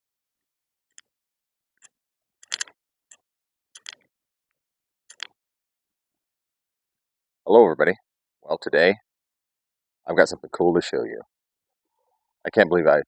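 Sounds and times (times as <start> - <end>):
sharp clicks and knocks: 2.4 - 3.2, 3.8 - 4.0, 5.1 - 5.3.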